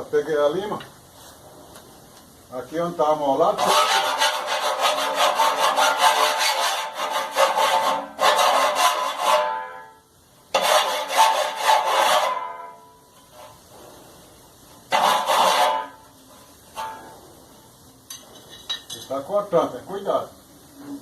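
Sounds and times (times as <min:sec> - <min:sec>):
hand file rasping on metal: 0:03.6 - 0:09.7, 0:10.5 - 0:12.6, 0:14.9 - 0:16.0.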